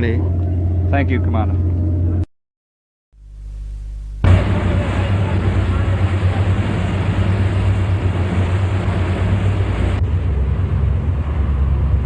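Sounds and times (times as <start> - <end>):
boat engines droning: 0.0 - 2.3, 4.2 - 12.0
wind: 0.0 - 2.3, 4.2 - 12.0
water noise: 4.1 - 12.0.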